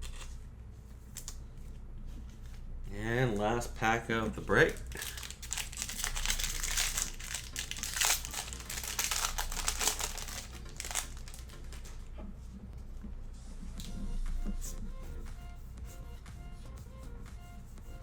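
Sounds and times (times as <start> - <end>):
foil wrapper tearing and crinkling: 4.4 - 12.0.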